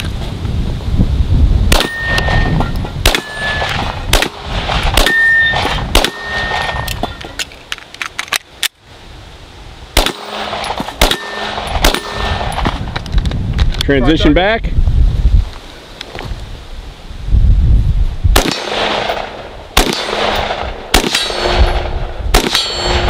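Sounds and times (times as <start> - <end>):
gunshots: 1.7 - 6.9, 10.0 - 12.8, 18.4 - 23.0
steel plate ringing: 1.8 - 3.8, 5.0 - 7.4, 11.1 - 12.4, 22.5 - 23.0.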